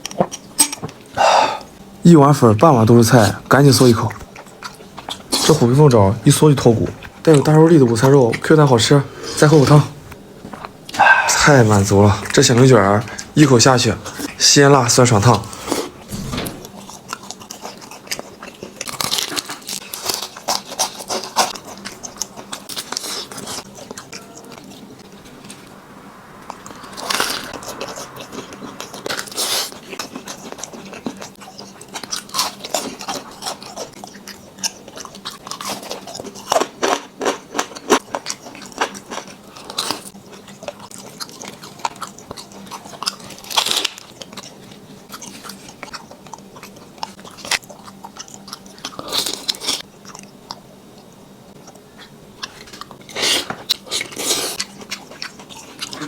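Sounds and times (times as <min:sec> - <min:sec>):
person biting and chewing: 0:15.3 - 0:24.8.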